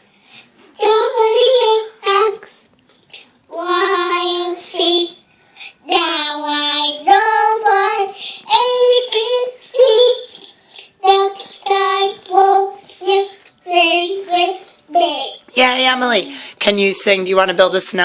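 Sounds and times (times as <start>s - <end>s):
child singing in a high voice: 0.8s - 2.6s, 3.5s - 5.2s, 5.8s - 15.5s.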